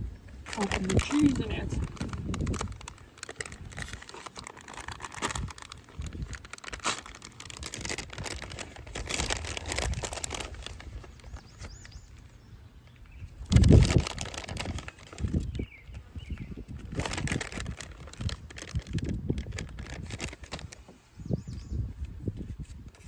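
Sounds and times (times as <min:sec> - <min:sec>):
plastic bag crinkling and tearing: 0:00.4 - 0:12.3, 0:13.4 - 0:21.0.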